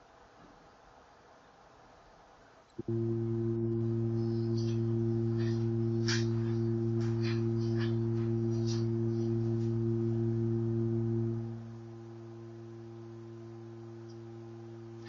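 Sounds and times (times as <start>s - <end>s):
steady low tone: 2.8s - 15.0s
faint ticks: 14.0s - 15.0s.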